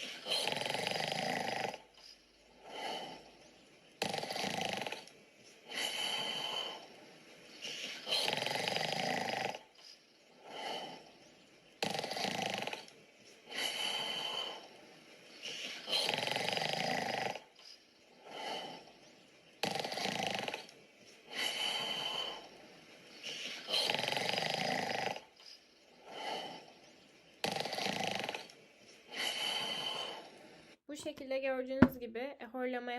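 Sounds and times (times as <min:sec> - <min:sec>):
person snoring: 0:00.0 - 0:03.4, 0:04.0 - 0:05.1, 0:05.7 - 0:11.2, 0:11.8 - 0:12.9, 0:13.5 - 0:18.9, 0:19.6 - 0:20.7, 0:21.3 - 0:22.6, 0:23.2 - 0:26.8, 0:27.4 - 0:28.5, 0:29.1 - 0:30.4
soft breathing: 0:00.0 - 0:16.5, 0:17.2 - 0:30.8.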